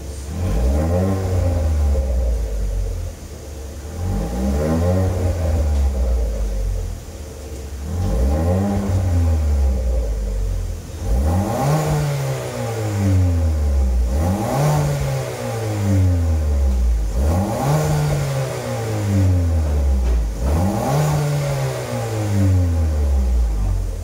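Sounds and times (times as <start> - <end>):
car engine revving: 0.0 - 24.0.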